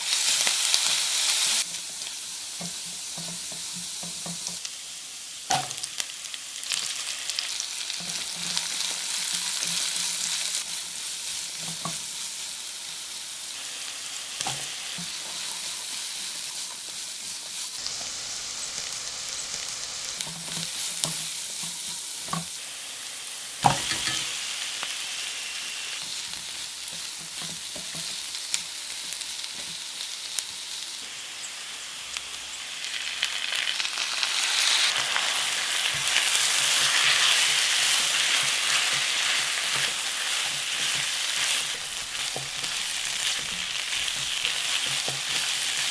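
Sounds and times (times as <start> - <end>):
chicken frying in hot oil: 0.0 - 45.9.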